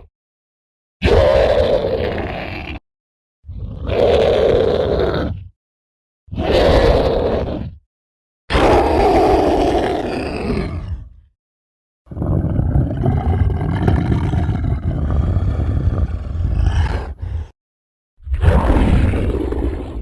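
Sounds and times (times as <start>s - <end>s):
deep gritty monster roar: 1.0s - 2.8s, 6.4s - 7.7s, 8.5s - 11.3s, 12.1s - 17.6s, 18.3s - 20.0s.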